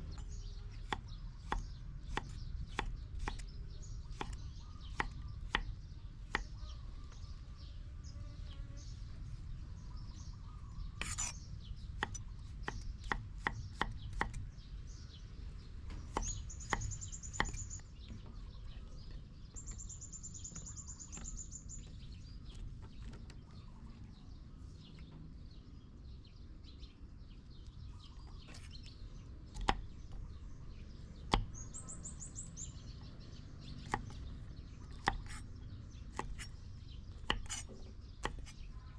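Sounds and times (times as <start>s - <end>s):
knife chopping on cutting board: 0.8s - 3.4s, 16.0s - 17.6s, 31.3s - 31.5s, 34.9s - 35.4s, 36.1s - 36.5s, 37.2s - 38.6s.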